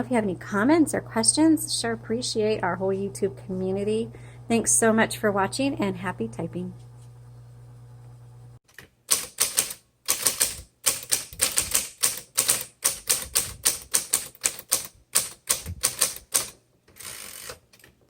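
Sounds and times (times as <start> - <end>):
typewriter key strikes: 9.1 - 16.6
typewriter motor hum: 9.1 - 17.8
typewriter whirring rush: 9.1 - 17.8.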